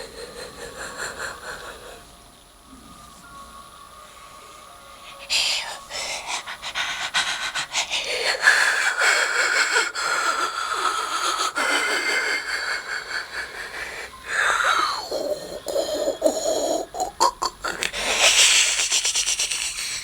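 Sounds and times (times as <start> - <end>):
person laughing wheezily: 0.0 - 2.0, 6.2 - 20.0.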